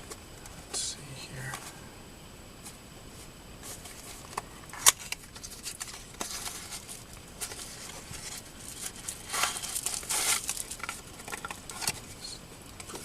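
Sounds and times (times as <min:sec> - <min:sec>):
packaging rustling: 0:03.6 - 0:12.1.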